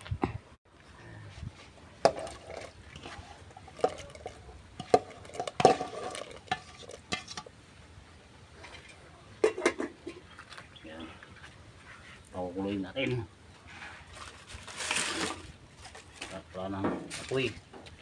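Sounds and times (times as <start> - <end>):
utensil stirring vegetables in pot: 2.0 - 7.6.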